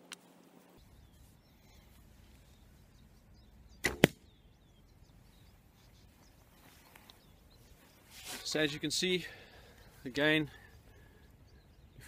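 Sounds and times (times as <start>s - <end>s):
faint bird chirps: 0.8s - 12.0s
arrow striking target: 3.8s - 4.2s
bow string snapping forward: 3.8s - 4.2s.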